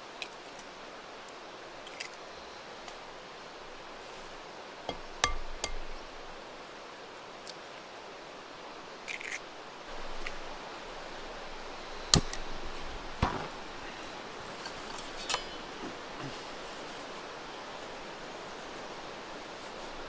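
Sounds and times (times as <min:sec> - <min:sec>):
river rushing: 0:05.9 - 0:20.0.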